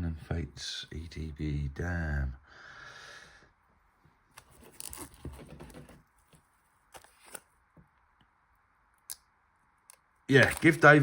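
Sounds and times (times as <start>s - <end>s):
cards and packaging rustling: 4.4s - 7.6s, 10.3s - 11.0s.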